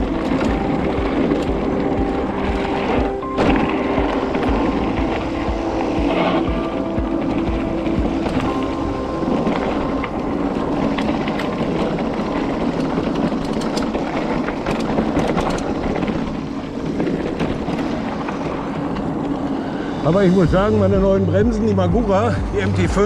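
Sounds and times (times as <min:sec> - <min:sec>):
steady low hum: 0:00.0 - 0:15.0
chain and frame rattle: 0:09.4 - 0:19.4.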